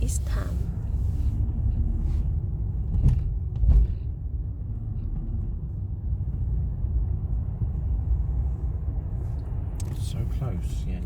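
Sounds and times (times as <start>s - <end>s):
car road noise rumble: 0.0s - 11.0s.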